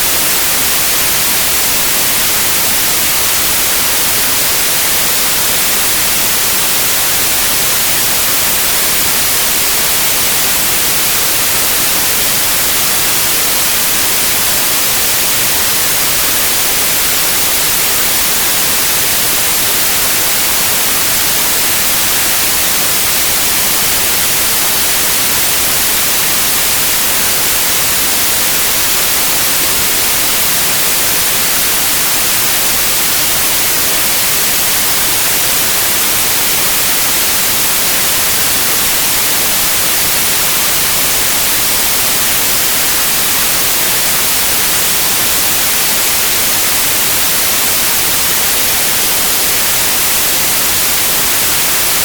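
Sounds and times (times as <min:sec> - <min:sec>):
steady white noise hiss: 0:00.0 - 0:52.0.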